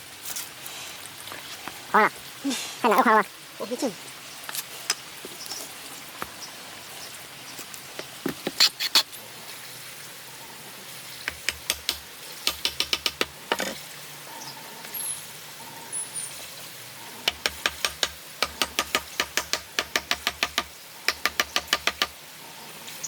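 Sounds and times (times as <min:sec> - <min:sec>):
taps and knocks on wood: 0:08.0 - 0:08.6, 0:11.2 - 0:13.7, 0:17.3 - 0:22.1.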